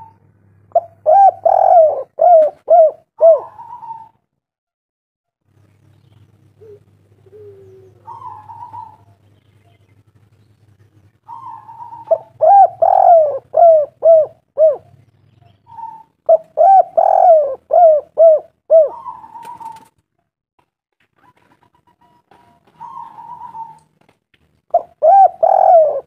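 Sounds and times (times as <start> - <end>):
dove cooing: 0.0 - 4.2, 6.6 - 9.2, 11.3 - 15.0, 15.6 - 19.9, 21.2 - 24.0, 24.7 - 26.0.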